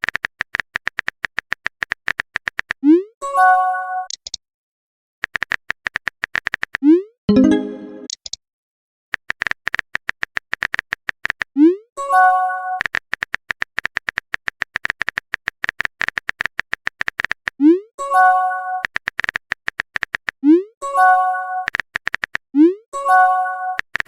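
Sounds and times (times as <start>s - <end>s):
electronic music with rapid clicks: 12.8s - 17.5s, 18.8s - 20.4s, 21.6s - 22.4s, 23.0s - 24.0s.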